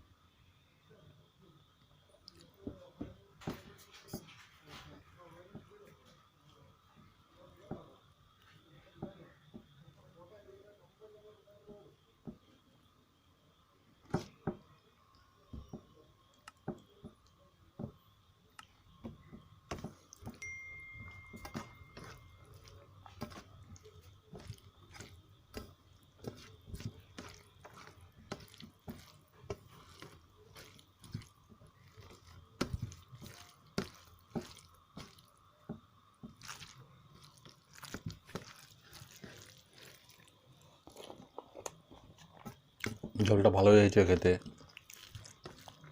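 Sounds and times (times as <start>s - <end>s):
person chewing food: 19.7s - 43.4s, 44.4s - 45.9s.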